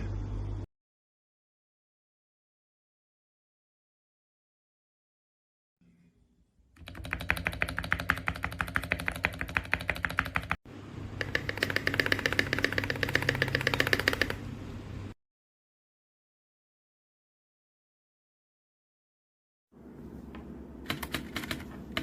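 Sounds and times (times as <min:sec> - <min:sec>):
typing on mechanical keyboard: 0:06.8 - 0:10.6, 0:11.2 - 0:14.4, 0:20.9 - 0:22.0.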